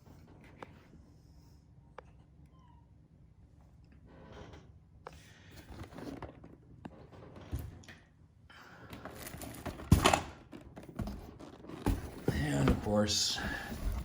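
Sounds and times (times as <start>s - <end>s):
boxes and packaging rustling: 8.8s - 14.0s.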